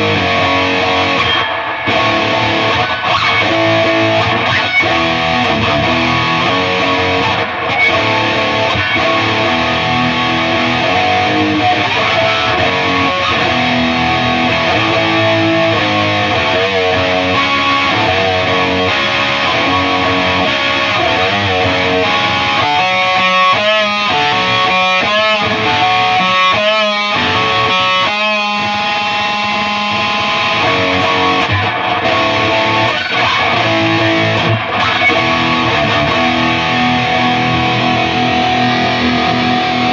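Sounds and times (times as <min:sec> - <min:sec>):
distorted electric guitar: 0:00.0 - 0:39.9.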